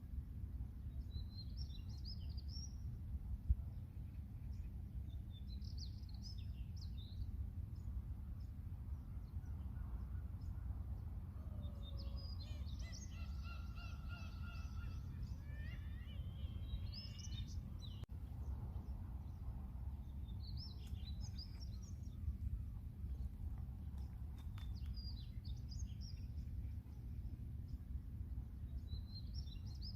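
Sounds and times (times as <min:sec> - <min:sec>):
seagulls calling: 0:12.5 - 0:17.4
steady low rumble: 0:14.6 - 0:29.9.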